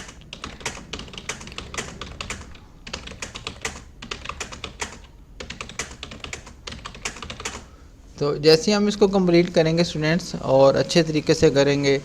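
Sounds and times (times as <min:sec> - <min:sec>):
keyboard typing: 0:00.0 - 0:07.7.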